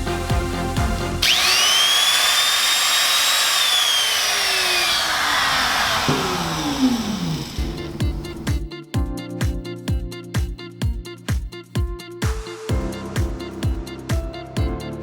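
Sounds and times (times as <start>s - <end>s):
power tool whining: 1.2s - 8.6s.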